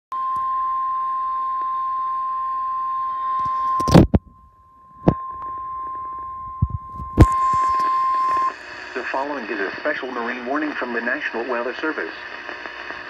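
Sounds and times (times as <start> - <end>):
steady warning alarm tone: 0.2 - 8.8
radio hiss: 7.0 - 13.0.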